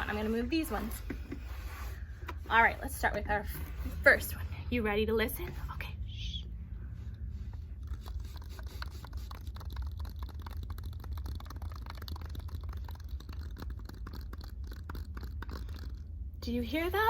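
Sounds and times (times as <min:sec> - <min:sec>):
ball rattling inside a tube: 0:07.9 - 0:16.5.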